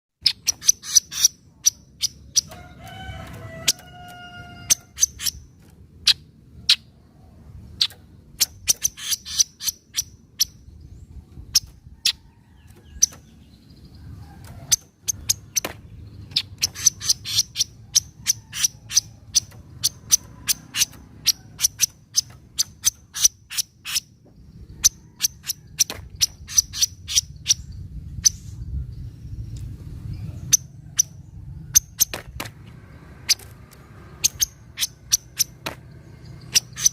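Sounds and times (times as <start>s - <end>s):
bird chattering call: 0.2s - 6.9s, 7.8s - 10.6s, 14.6s - 28.4s, 34.2s - 36.9s
faint low rumble: 25.6s - 34.0s.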